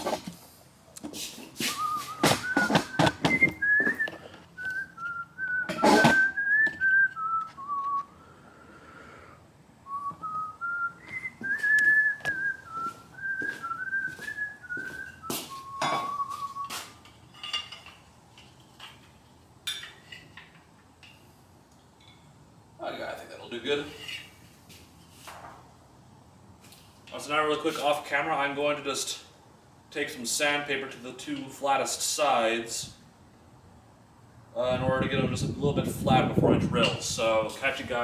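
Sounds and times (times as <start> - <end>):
things being handled clattering: 0.0 - 0.4, 1.0 - 7.9
person whistling a tune: 1.6 - 8.2, 9.9 - 16.9.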